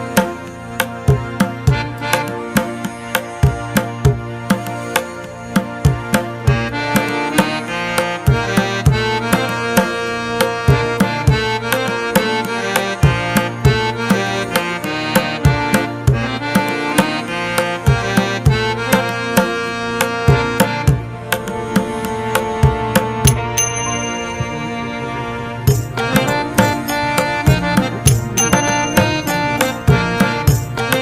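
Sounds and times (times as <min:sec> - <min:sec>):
sustained melodic notes: 0:00.0 - 0:31.0
hand drum strokes: 0:25.6 - 0:31.0.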